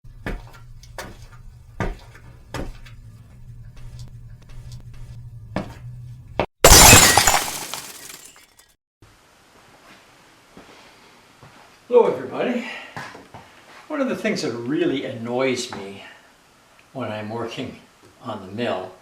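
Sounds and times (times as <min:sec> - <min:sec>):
glass shattering: 0:06.6 - 0:08.6.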